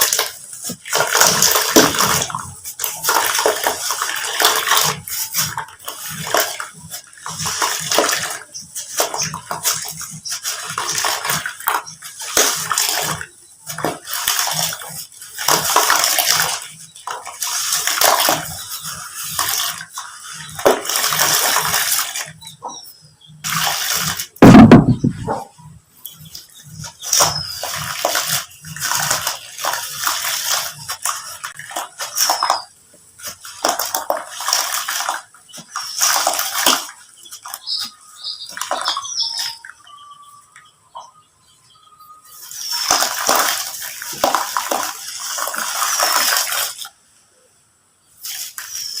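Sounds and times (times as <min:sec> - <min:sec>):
loud low thud: 0:24.4 - 0:25.3.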